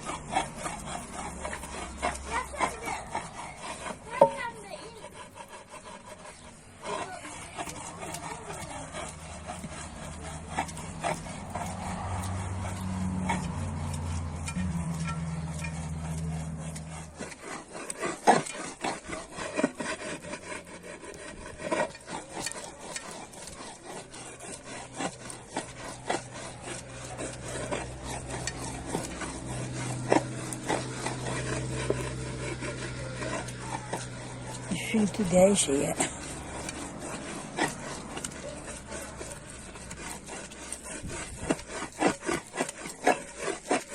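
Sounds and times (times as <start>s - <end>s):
hands scraping and rubbing food: 0.0s - 43.9s.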